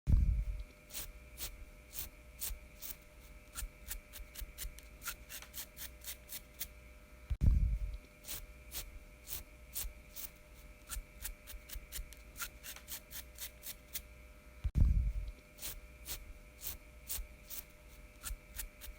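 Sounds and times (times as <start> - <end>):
fingernails scratching beard: 0.9 - 6.7, 8.2 - 14.0, 15.6 - 18.9
loud low thump: 7.4 - 7.9, 14.7 - 15.3.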